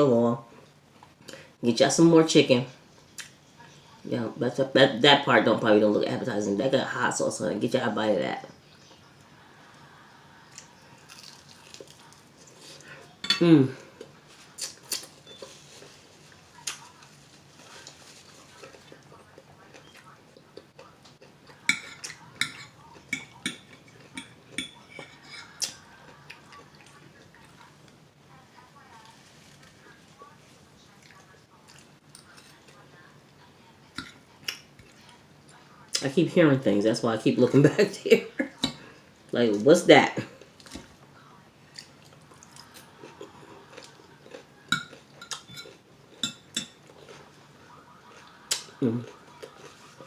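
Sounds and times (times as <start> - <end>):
quiet chewing: 8.7 - 13.2, 13.8 - 36.0, 40.3 - 50.0
cutlery clinking on plate: 44.7 - 46.8.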